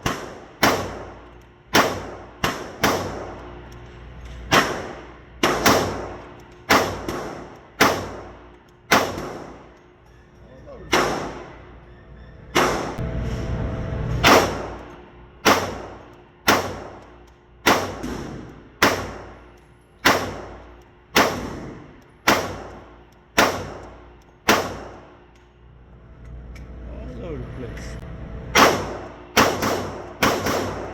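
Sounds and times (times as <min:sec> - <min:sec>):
gunshots with ringing tail: 0:00.0 - 0:03.4, 0:04.5 - 0:09.6, 0:10.9 - 0:11.6, 0:14.2 - 0:14.8, 0:15.4 - 0:17.0, 0:20.0 - 0:25.1, 0:28.5 - 0:30.9.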